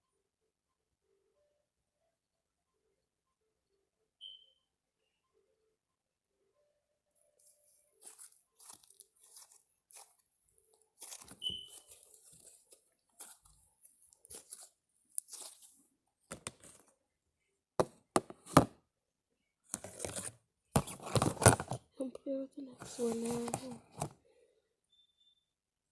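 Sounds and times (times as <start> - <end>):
slime squelching and crackling: 8.0 - 10.2, 11.0 - 15.8.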